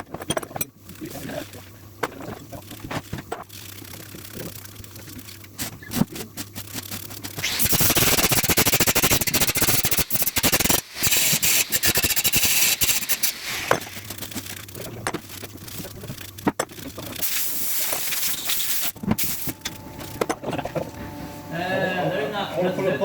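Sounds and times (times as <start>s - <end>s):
welder crackling and spitting: 3.6s - 19.6s
low steady hum: 13.4s - 23.0s.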